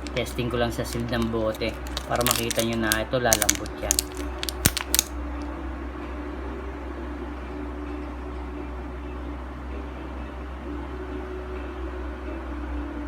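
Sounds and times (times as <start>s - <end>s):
sharp clicks: 3.4s - 5.1s.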